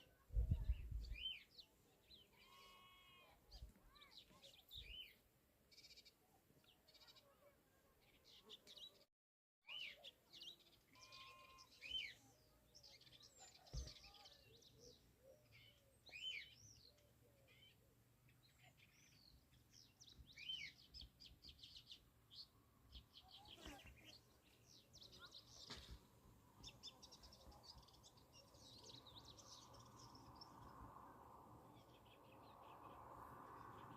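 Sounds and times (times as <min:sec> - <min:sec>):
birds chirping: 0:09.7 - 0:17.7, 0:18.3 - 0:30.9.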